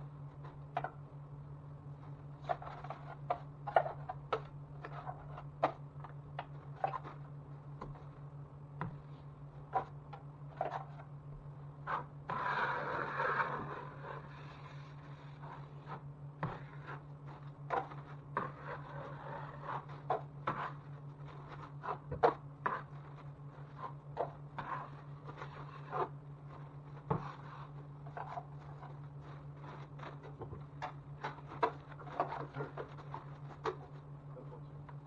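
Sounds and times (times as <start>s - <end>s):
steady low hum: 0.0s - 35.0s
knife scraping joint compound: 11.8s - 34.1s.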